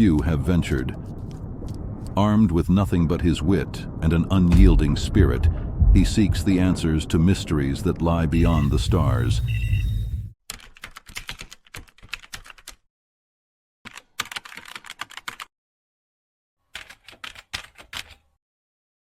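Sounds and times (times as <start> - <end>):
rapid keyboard key clicks: 10.5 - 12.8, 13.9 - 15.5, 16.8 - 18.2.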